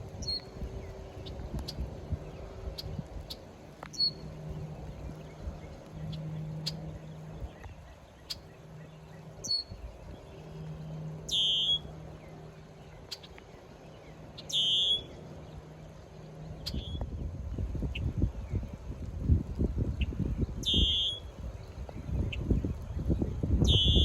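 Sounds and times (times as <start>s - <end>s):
faint low hum: 0.0s - 24.0s
bird chirps: 0.2s - 0.6s, 2.8s - 4.2s, 6.0s - 15.2s, 16.5s - 17.0s, 20.0s - 21.3s, 23.6s - 24.0s
harsh bird calls: 7.8s - 12.2s, 12.8s - 15.4s, 20.5s - 21.3s, 23.6s - 24.0s.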